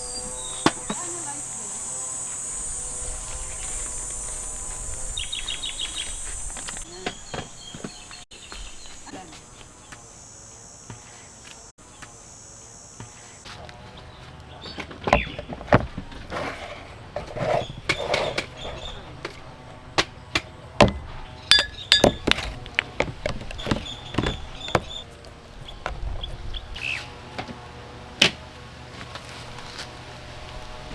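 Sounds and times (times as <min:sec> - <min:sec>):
hard objects knocking and clicking: 0:20.0 - 0:25.0.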